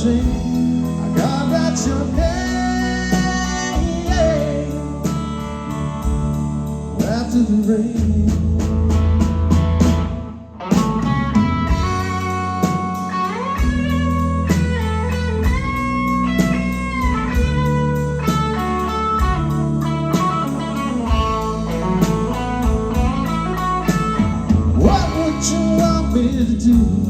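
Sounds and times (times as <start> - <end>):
electric guitar lead: 0.0 - 7.3, 8.5 - 27.0
steady cymbal beat: 0.0 - 8.9, 11.7 - 27.0
bass guitar: 0.0 - 27.0.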